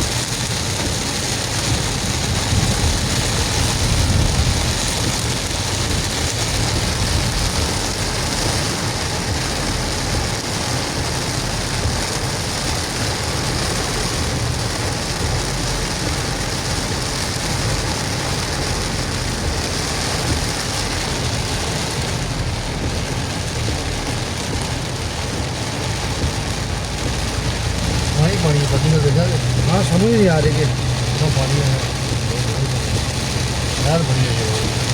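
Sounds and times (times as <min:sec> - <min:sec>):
engine and road rumble: 0:00.0 - 0:34.9
heavy rain on a car: 0:00.0 - 0:34.9.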